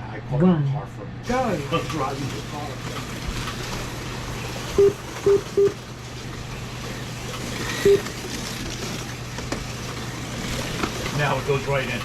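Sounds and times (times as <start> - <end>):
short electronic beeps: 4.8 - 5.8, 7.8 - 8.0.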